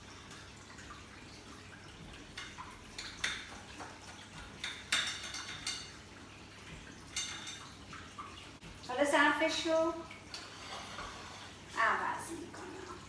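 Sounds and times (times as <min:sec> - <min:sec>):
metal utensil scraping a plate: 0:10.3 - 0:11.6.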